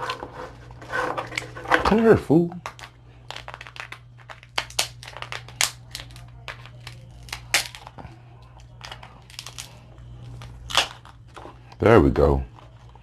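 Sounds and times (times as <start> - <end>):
low steady hum: 0.0 - 13.0
crab shell cracking: 2.6 - 11.3.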